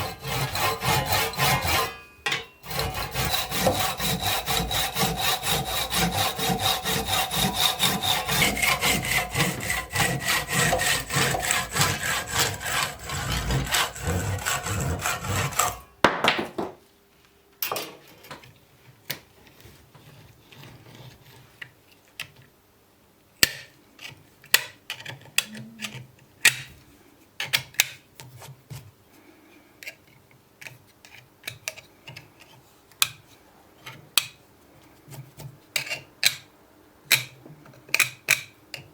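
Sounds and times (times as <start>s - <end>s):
hand saw cutting wood: 0.0s - 15.9s.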